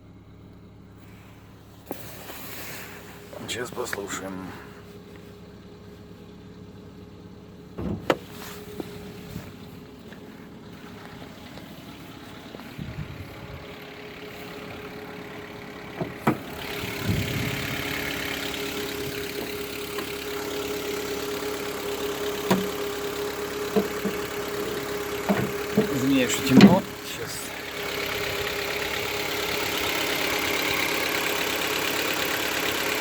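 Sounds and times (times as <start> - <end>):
car engine idling: 0.0 - 33.0
sharp engine clicks: 14.0 - 33.0.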